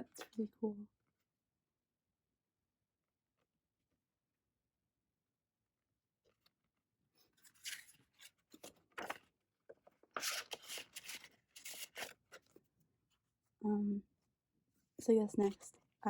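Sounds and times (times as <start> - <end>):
paper and plastic rustling: 7.4 - 12.6.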